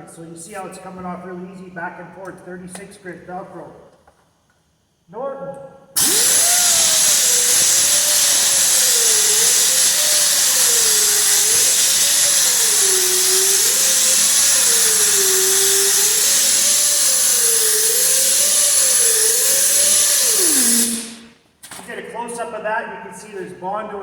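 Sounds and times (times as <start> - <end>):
power sander whining and grinding: 6.0 - 21.3.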